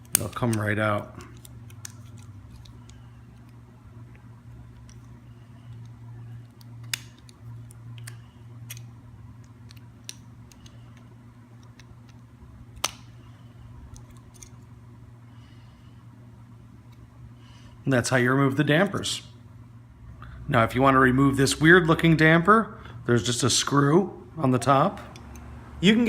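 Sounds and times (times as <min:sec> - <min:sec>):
steady low hum: 0:00.0 - 0:26.0
plastic clicks and snaps: 0:05.7 - 0:12.2, 0:12.8 - 0:13.1.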